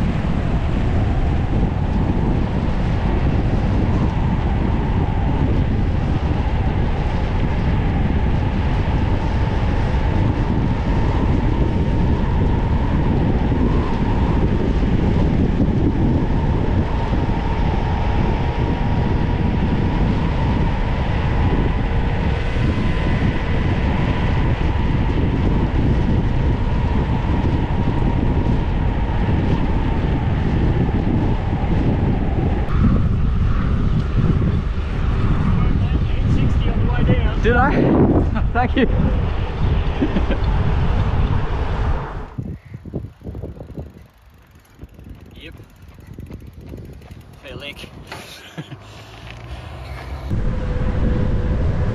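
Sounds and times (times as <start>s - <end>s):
bicycle tyres on asphalt: 0.0s - 51.9s
wind over microphone: 0.0s - 51.9s
faint whine: 50.3s - 51.9s.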